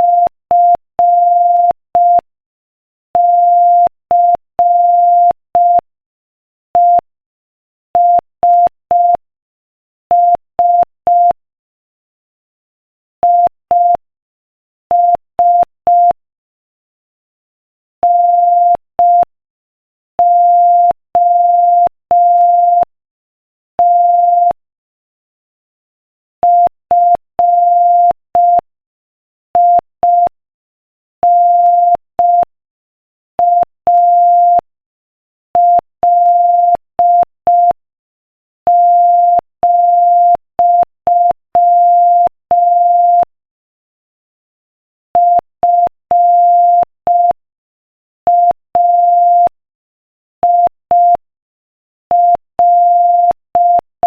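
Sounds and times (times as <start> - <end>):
morse code beeps: 0.0 - 2.2, 3.2 - 5.8, 18.0 - 19.3, 23.8 - 24.6, 35.6 - 37.8, 38.7 - 43.3, 45.2 - 47.4, 48.3 - 49.6, 50.4 - 51.2, 52.1 - 53.9.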